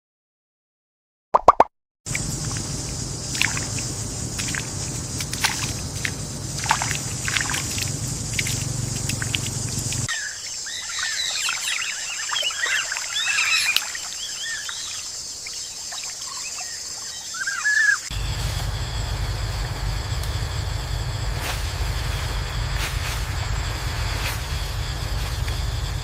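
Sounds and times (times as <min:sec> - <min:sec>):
low rumble: 0:02.1 - 0:10.1, 0:18.1 - 0:26.0
water splashing and sloshing: 0:02.1 - 0:25.7
small birds chirping: 0:02.1 - 0:26.0
steady high hiss: 0:02.1 - 0:26.0.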